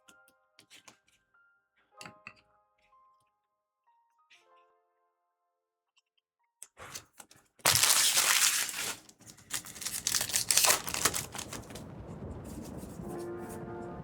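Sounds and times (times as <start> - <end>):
foil wrapper crinkling: 7.6 - 11.8.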